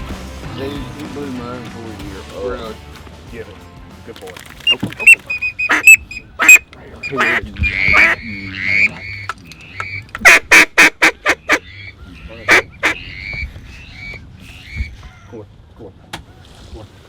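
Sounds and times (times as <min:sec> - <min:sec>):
duck quacking: 0:04.7 - 0:15.3.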